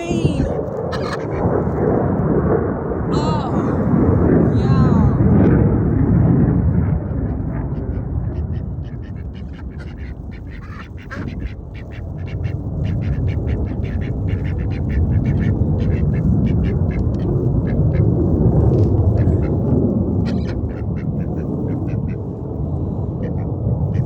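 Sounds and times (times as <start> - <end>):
wind buffeting microphone: 0.0 - 24.0
ducks quacking: 0.3 - 1.5, 7.0 - 18.2, 19.0 - 22.3, 23.2 - 24.0.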